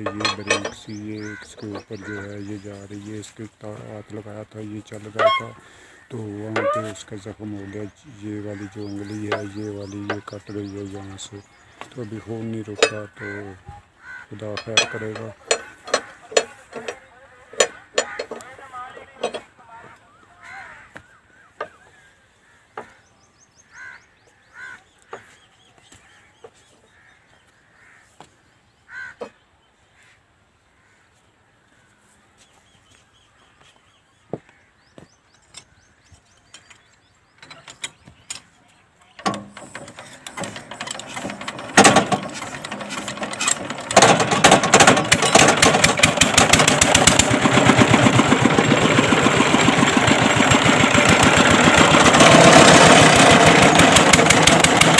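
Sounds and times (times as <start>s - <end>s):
boring rig engine running: 0.0s - 13.7s, 14.3s - 20.2s, 39.2s - 54.9s.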